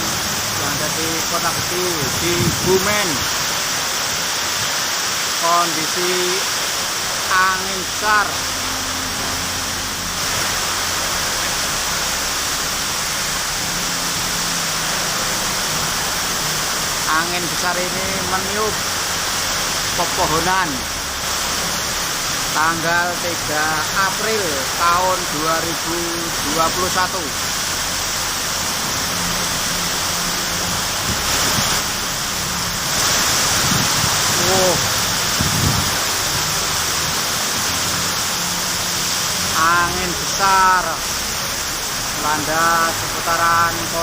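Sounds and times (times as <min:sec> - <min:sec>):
heavy rain pouring: 0:00.0 - 0:44.0
strong wind: 0:01.5 - 0:04.8, 0:33.3 - 0:36.4.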